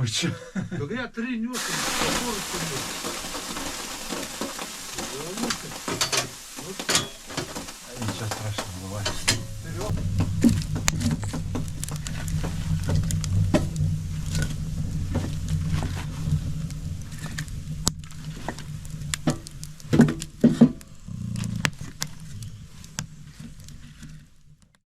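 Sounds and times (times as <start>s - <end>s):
wood fire crackling: 1.6s - 24.8s
low rumble: 7.7s - 24.6s
knocks: 19.2s - 20.8s.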